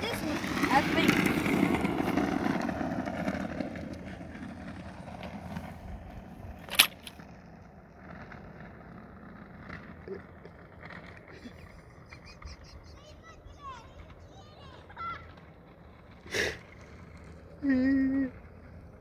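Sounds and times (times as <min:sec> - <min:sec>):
small wheels rolling on pavement: 0:00.0 - 0:19.0.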